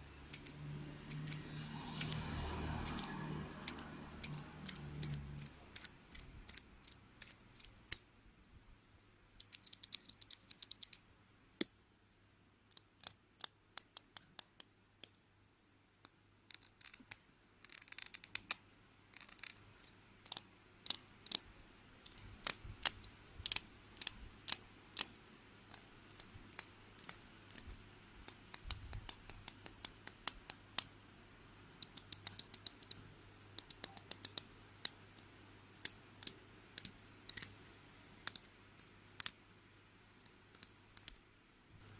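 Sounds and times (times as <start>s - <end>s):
sharp tapping clicks: 0.3s - 1.4s, 2.0s - 2.2s, 2.8s - 8.0s, 25.7s - 30.9s, 31.8s - 33.0s, 33.6s - 37.5s, 40.2s - 41.2s.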